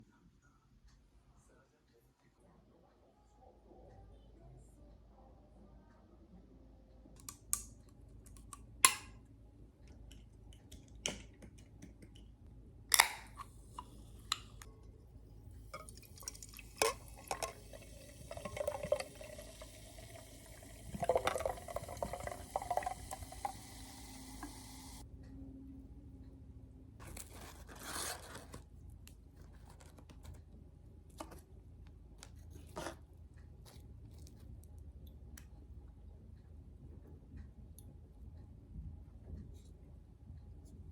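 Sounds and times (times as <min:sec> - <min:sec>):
liquid pouring into a glass: 0:15.8 - 0:25.0.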